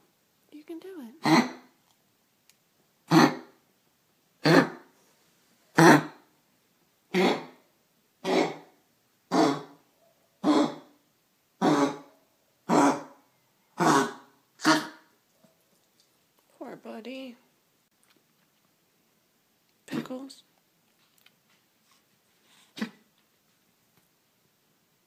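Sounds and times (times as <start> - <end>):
pet coughing: 1.2 - 1.7, 3.1 - 3.6, 4.4 - 4.9, 5.8 - 6.2, 7.1 - 7.6, 8.2 - 8.7, 9.3 - 9.8, 10.4 - 10.9, 11.6 - 12.1, 12.7 - 13.1, 13.8 - 15.0, 22.7 - 23.1.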